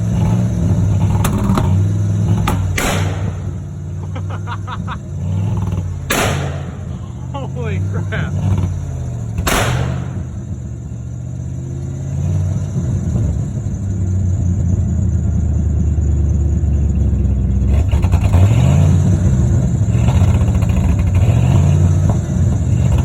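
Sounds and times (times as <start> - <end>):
truck engine running and revving: 0.0 - 23.0.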